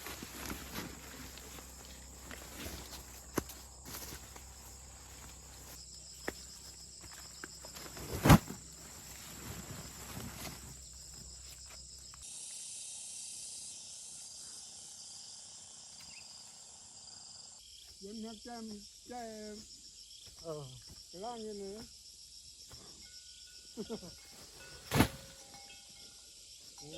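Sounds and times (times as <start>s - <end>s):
rustling of plants: 0.0s - 12.2s, 23.8s - 25.6s
insects chirring: 0.0s - 26.9s.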